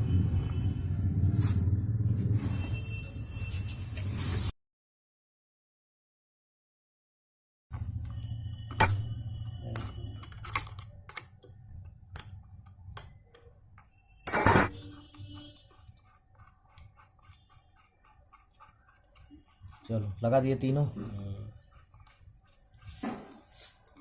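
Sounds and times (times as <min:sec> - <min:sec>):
metal tools clinking: 0:14.3 - 0:15.0.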